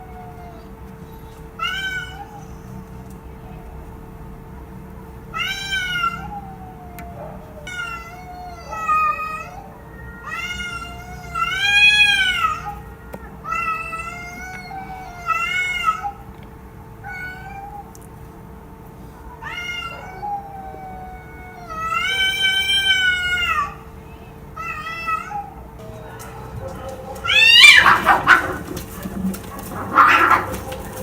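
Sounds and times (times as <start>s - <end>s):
cat meowing: 0.0s - 0.8s, 1.6s - 2.7s, 5.3s - 16.2s, 17.0s - 17.9s, 19.4s - 23.8s, 24.6s - 31.0s
faint steady hum: 0.0s - 31.0s.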